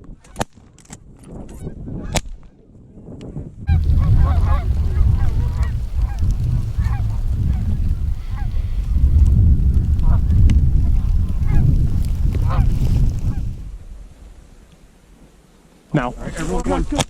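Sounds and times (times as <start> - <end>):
wind noise on microphone: 0.0 - 15.3
geese honking: 3.7 - 13.5.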